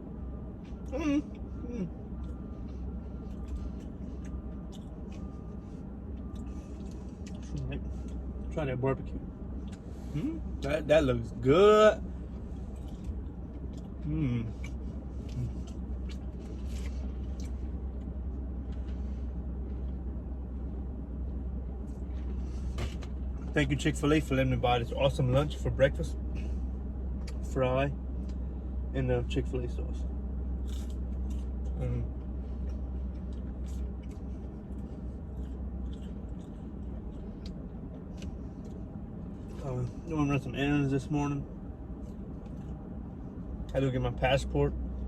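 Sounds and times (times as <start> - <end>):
car cabin engine rumble: 0.0 - 45.0
person chewing: 0.7 - 8.4, 12.4 - 20.2, 30.5 - 39.6.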